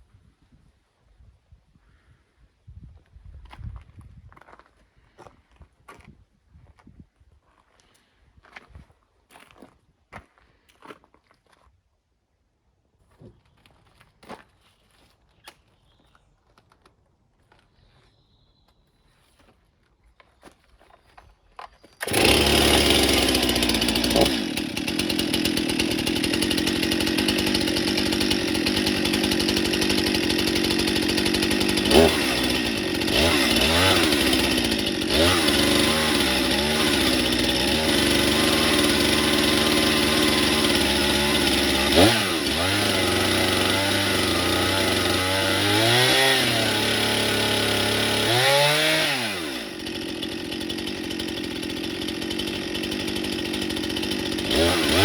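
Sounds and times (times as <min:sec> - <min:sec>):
chainsaw revving and idling: 0:22.0 - 0:55.0.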